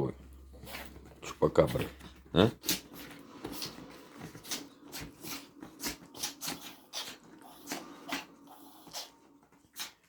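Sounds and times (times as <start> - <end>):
dogs sneezing: 4.4 - 10.0.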